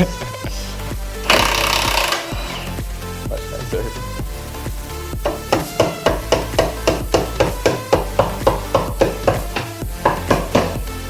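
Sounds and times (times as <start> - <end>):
background music: 0.0 - 11.0
rapid hammer blows: 5.2 - 11.0.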